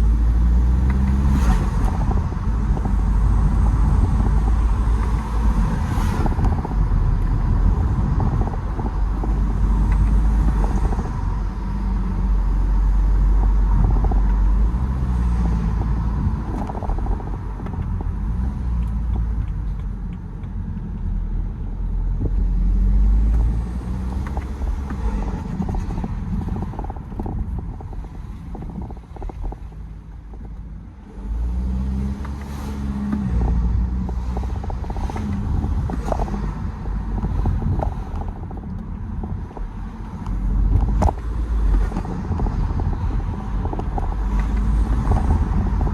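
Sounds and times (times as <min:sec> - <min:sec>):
diesel engine revving: 0:00.0 - 0:30.4.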